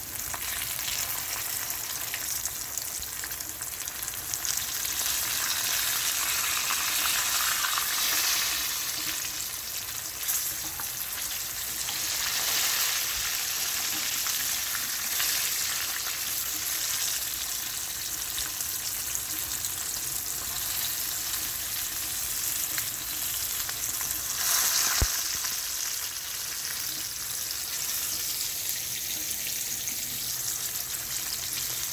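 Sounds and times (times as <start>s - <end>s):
fish sizzling in a pan: 0.0s - 31.9s.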